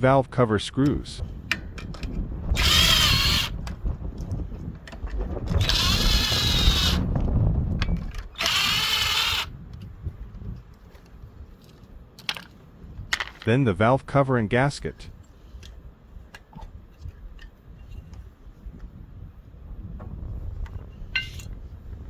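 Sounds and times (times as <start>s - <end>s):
handling noise: 0.9s - 13.5s
power drill whining: 2.5s - 3.6s, 5.5s - 7.2s, 8.0s - 9.5s.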